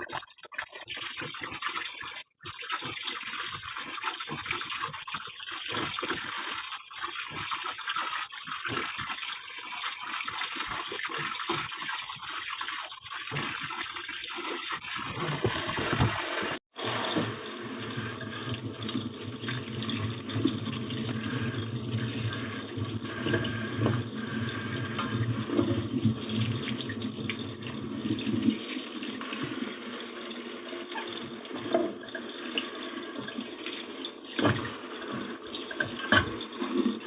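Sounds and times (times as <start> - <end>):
faucet running into sink: 0.0 - 37.0.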